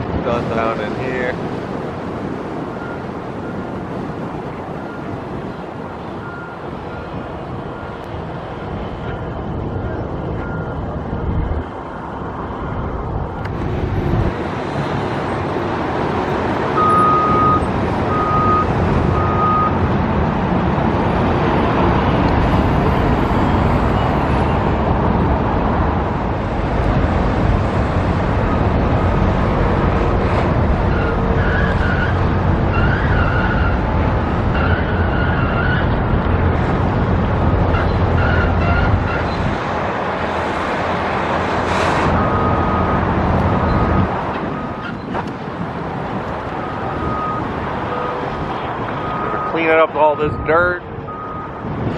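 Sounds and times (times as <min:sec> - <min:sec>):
construction site noise: 0:00.0 - 0:51.9
road traffic: 0:00.0 - 0:51.9
short beeps: 0:16.8 - 0:19.8.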